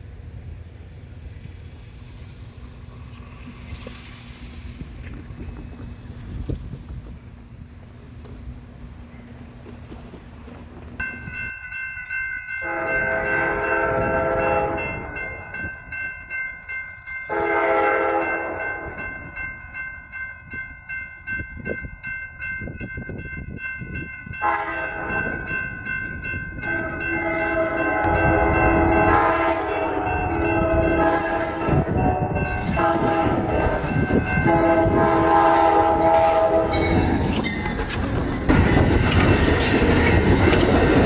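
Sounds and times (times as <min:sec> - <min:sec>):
rail wheels clicking over joints: 0:00.4 - 0:20.6, 0:21.2 - 0:41.0
locomotive air horn blasts: 0:12.6 - 0:15.1, 0:17.3 - 0:18.9, 0:24.4 - 0:25.4, 0:26.6 - 0:37.0.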